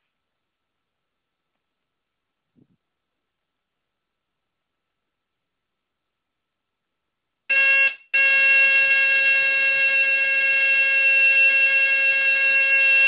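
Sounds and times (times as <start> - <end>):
smoke alarm high-pitched tone: 7.5 - 13.0.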